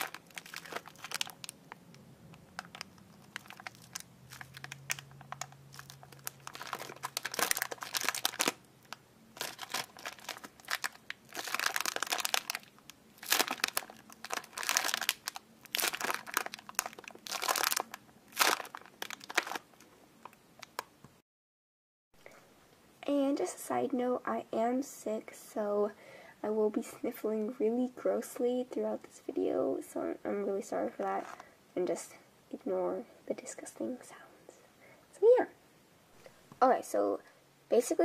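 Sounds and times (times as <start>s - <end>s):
packaging crinkling: 0.0s - 20.9s.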